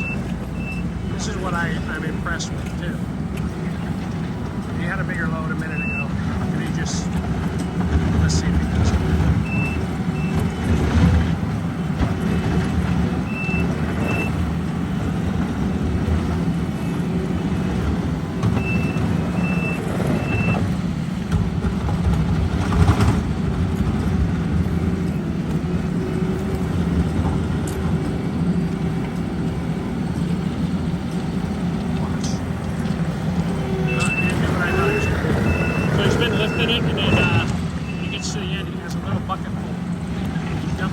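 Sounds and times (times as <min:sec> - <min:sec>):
backup alarm beeping: 0:00.0 - 0:02.5, 0:05.4 - 0:06.8, 0:07.6 - 0:10.8, 0:13.2 - 0:14.4, 0:18.5 - 0:20.8, 0:33.6 - 0:39.4
paving equipment engine drone: 0:00.0 - 0:40.9.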